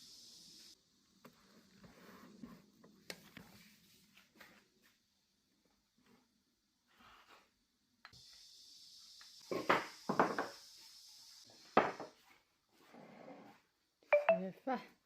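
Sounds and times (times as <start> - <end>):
steady hiss: 0.0 - 4.2, 8.1 - 12.5.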